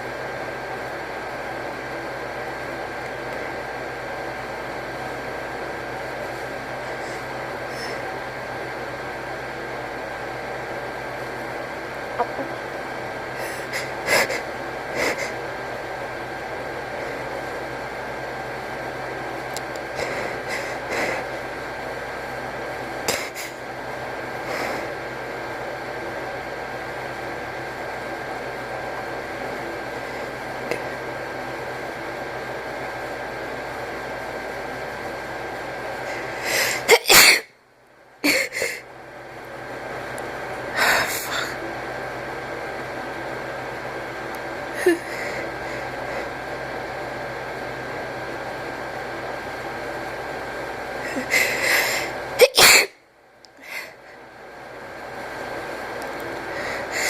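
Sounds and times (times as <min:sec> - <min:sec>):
fan-like hum: 0:00.0 - 0:57.0
person sniffing and gasping: 0:13.4 - 0:15.4, 0:20.0 - 0:21.3.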